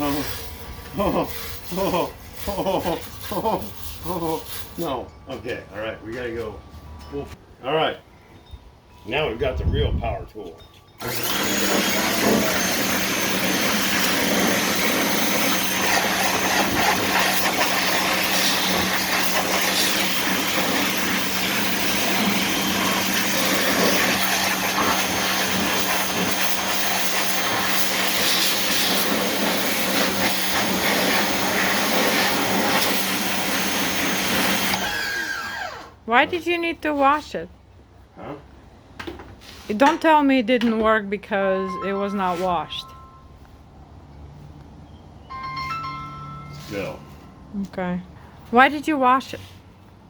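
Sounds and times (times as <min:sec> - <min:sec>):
pressure washer motor hum: 0:11.0 - 0:36.0
water spray hissing: 0:14.0 - 0:34.6.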